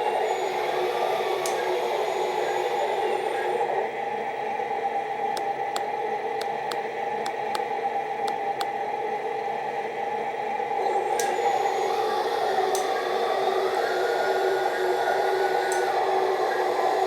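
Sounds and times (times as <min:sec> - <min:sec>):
toy excavator mechanical whine: 0:10.8 - 0:17.0.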